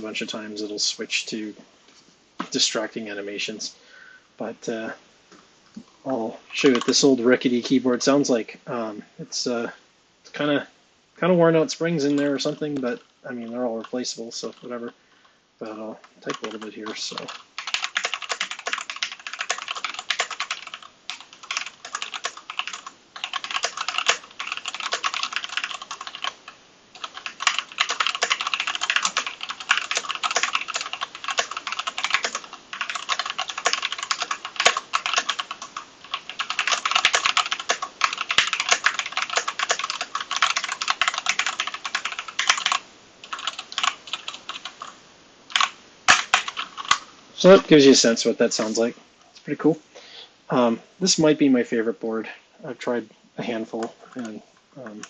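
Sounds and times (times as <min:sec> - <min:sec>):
mechanical keyboard typing: 0:06.6 - 0:07.0, 0:16.3 - 0:47.0.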